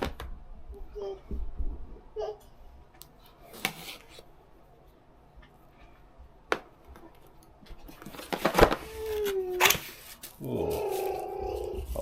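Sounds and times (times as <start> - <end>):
cardboard and packing rustling: 7.7 - 12.0.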